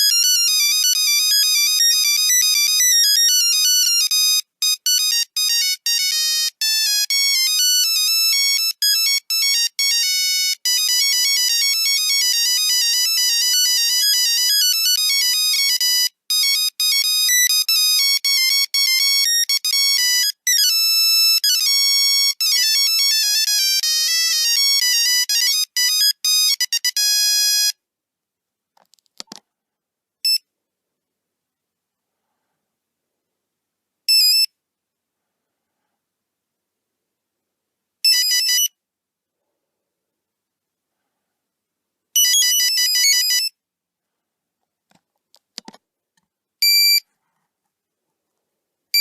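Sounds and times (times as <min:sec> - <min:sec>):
monophonic ringtone melody: 0:00.0 - 0:27.7.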